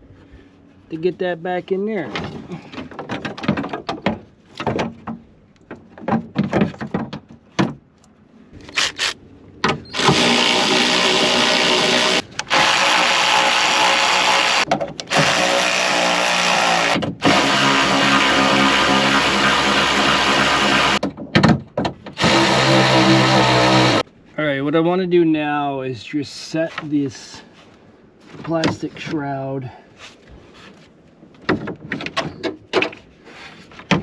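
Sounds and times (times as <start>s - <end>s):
power drill running: 9.9s - 21.0s, 22.2s - 24.0s.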